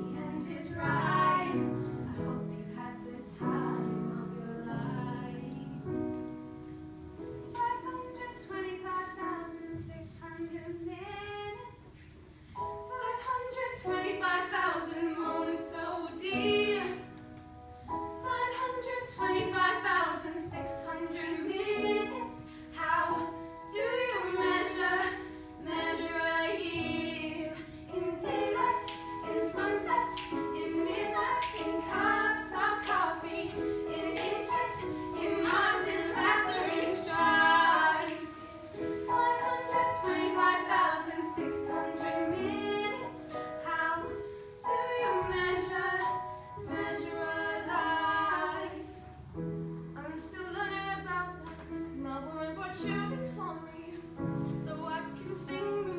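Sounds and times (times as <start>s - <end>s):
choir singing: 0.0s - 5.6s, 12.9s - 17.2s, 18.2s - 49.0s.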